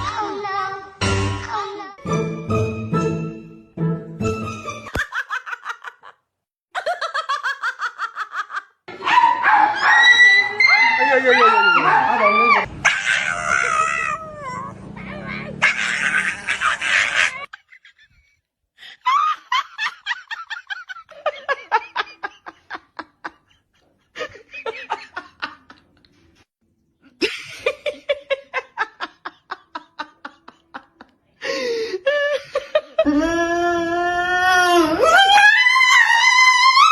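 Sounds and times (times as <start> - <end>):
hearty laughter: 4.9 - 6.2, 6.8 - 8.8, 15.7 - 26.2, 27.2 - 33.1.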